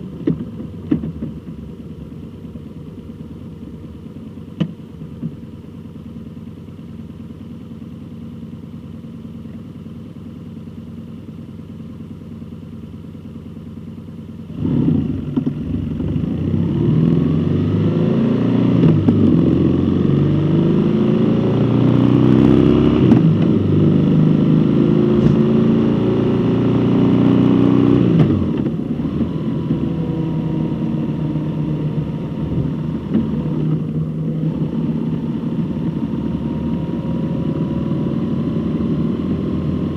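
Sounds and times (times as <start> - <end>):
vehicle engine accelerating through gears: 14.4 - 39.9.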